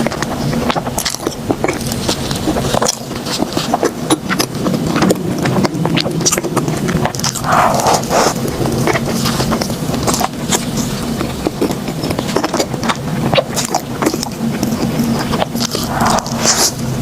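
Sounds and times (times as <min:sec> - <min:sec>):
mouth chewing bun: 0:00.0 - 0:17.0
steady low hum: 0:00.0 - 0:17.0.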